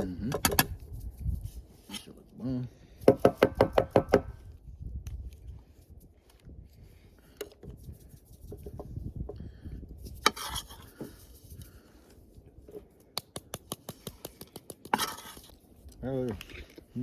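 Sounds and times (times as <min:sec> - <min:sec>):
quick run of clicks: 0:13.1 - 0:15.0.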